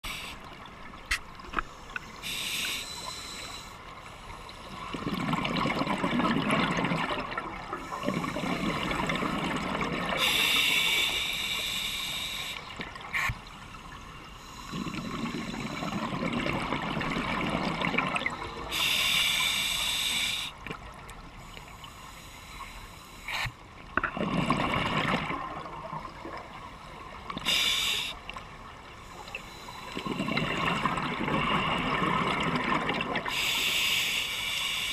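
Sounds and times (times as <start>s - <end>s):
regulator inhale hiss: 0.0s - 0.5s, 1.6s - 4.9s, 7.8s - 9.1s, 10.2s - 16.1s, 18.4s - 20.6s, 21.4s - 23.6s, 26.7s - 28.3s, 29.0s - 30.2s, 33.3s - 34.9s
exhaled bubbles rushing: 4.9s - 10.2s, 14.7s - 18.5s, 24.0s - 26.4s, 30.0s - 33.3s.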